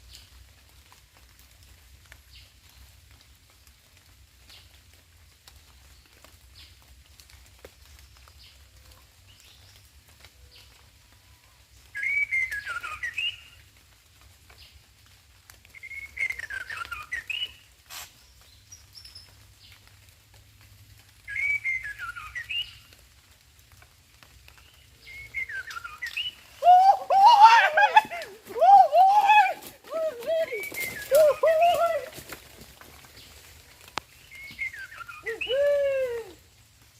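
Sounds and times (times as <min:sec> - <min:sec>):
bird singing whistled phrases: 0:12.0 - 0:13.6, 0:15.8 - 0:17.6, 0:21.3 - 0:22.8, 0:25.0 - 0:27.7, 0:30.3 - 0:31.9, 0:34.3 - 0:35.9.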